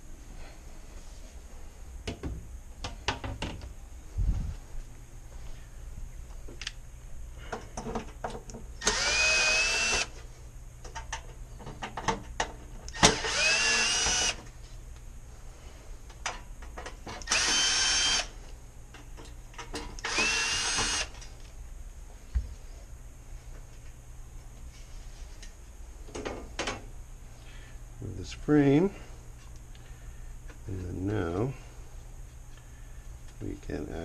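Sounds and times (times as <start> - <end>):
power drill-driver running: 8.8 - 10.1, 12.9 - 14.4, 17.2 - 18.3, 20.0 - 21.2.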